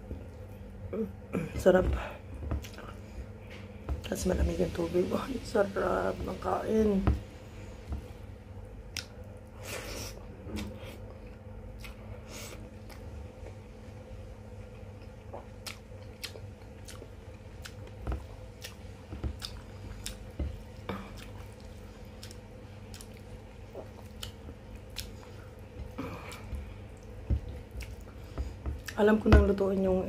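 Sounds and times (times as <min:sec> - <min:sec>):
faint steady hum: 0:00.0 - 0:30.0
person chewing food: 0:02.1 - 0:04.1, 0:08.9 - 0:13.7, 0:14.6 - 0:29.0.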